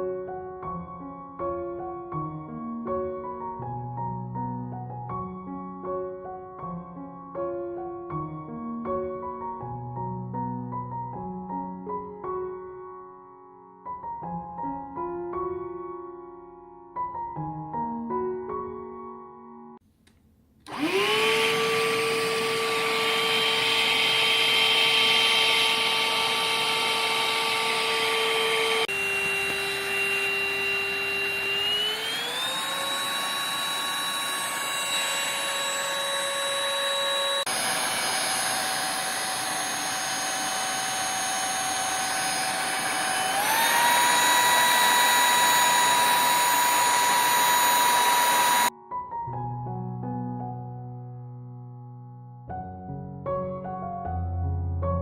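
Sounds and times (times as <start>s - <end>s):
piano music: 0.0s - 19.7s, 48.7s - 55.0s
vacuum cleaner motor whine: 20.7s - 48.7s.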